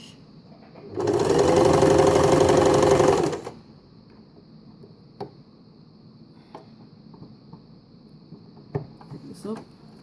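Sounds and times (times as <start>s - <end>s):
sewing machine running: 0.8s - 3.6s.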